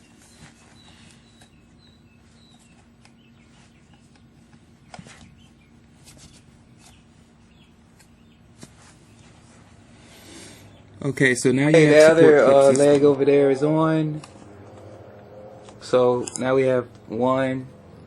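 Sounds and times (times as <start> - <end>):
faint bird chirps: 0.0 - 9.6.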